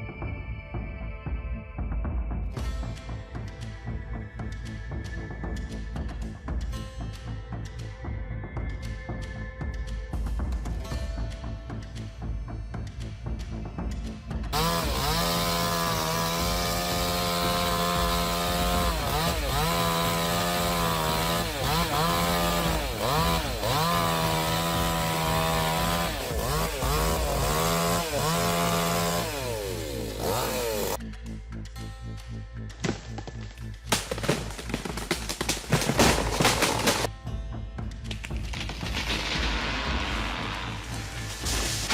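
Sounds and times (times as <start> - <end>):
chainsaw cutting wood: 14.5 - 31.0, 32.8 - 37.1, 38.5 - 41.9.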